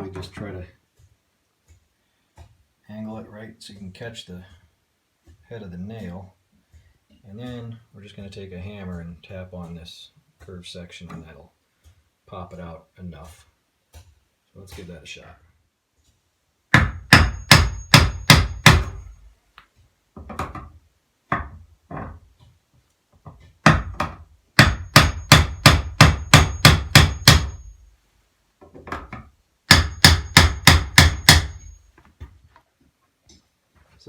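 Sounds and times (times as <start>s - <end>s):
hammer tapping on crowbar: 16.7s - 19.2s, 23.7s - 27.8s, 28.8s - 31.8s
faint high metallic ring: 17.3s - 19.3s, 24.8s - 28.0s, 31.5s - 32.0s.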